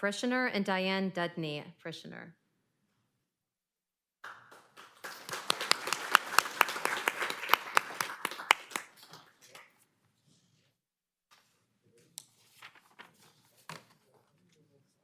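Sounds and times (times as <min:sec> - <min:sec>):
audience applauding: 0:04.2 - 0:09.6.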